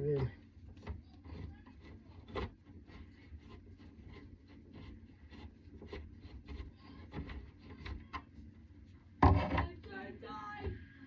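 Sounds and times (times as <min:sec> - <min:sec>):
screwdriver scraping: 0:00.0 - 0:08.6.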